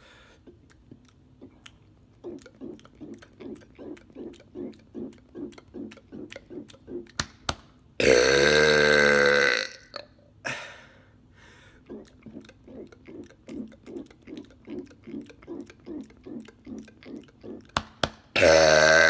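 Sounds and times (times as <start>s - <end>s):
soft gulping: 0.0s - 10.2s, 11.5s - 19.0s
man burping: 8.0s - 10.6s, 15.0s - 19.0s.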